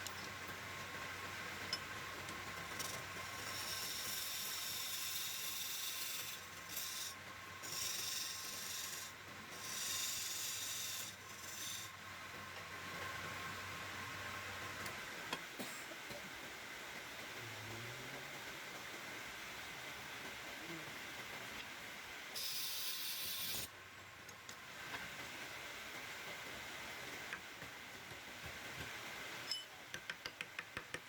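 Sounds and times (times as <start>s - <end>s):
wood lathe whining: 2.8s - 11.9s
tool rasping against wood: 3.4s - 11.9s.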